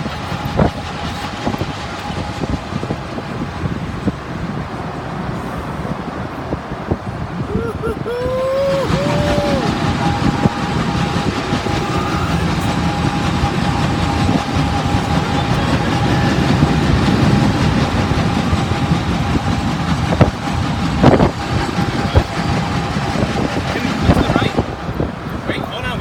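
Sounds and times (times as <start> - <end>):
train rolling past: 0.0 - 26.0
wheels clacking over rail joints: 8.9 - 25.8.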